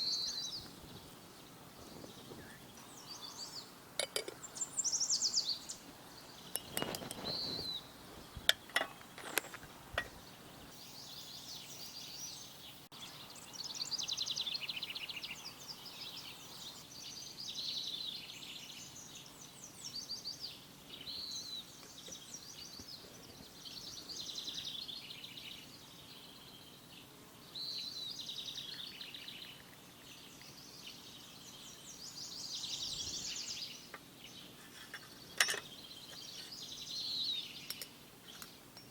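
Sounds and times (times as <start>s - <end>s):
songbird trilling: 0.0s - 8.8s.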